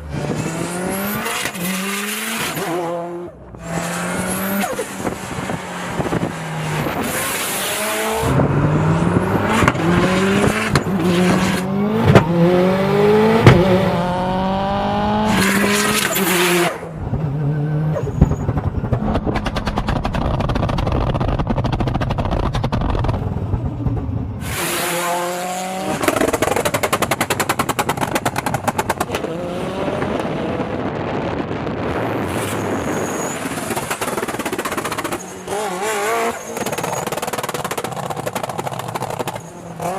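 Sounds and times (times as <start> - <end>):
turbocharged car engine accelerating: 0.0 - 39.9
exhaust crackling and popping: 18.1 - 24.4, 25.9 - 29.3, 33.5 - 35.2, 36.6 - 39.5.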